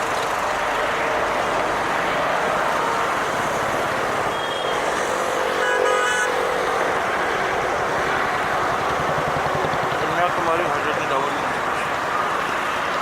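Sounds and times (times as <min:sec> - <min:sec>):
locomotive horn toot: 0:05.6 - 0:06.4.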